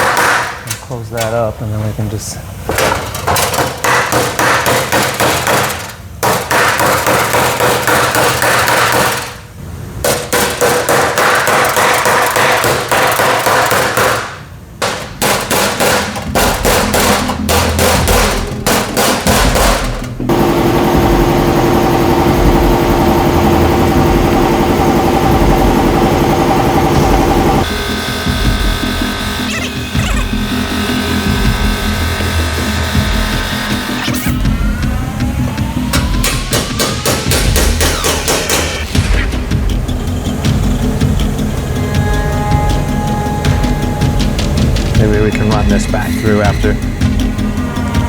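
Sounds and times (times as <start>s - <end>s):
hammer blows on sheet steel: 0.0s - 0.7s, 2.7s - 24.6s
steady pitched drone: 15.2s - 48.0s.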